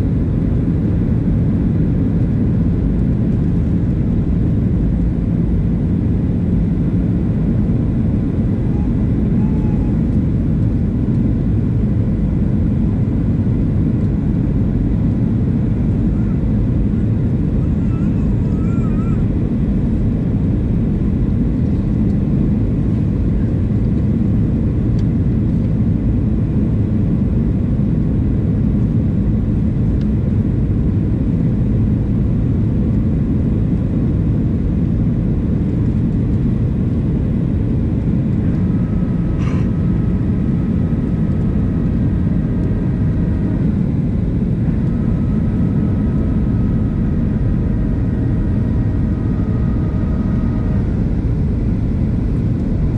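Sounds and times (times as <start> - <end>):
aircraft cabin engine rumble: 0.0 - 52.9
faint whining tones: 8.7 - 11.2.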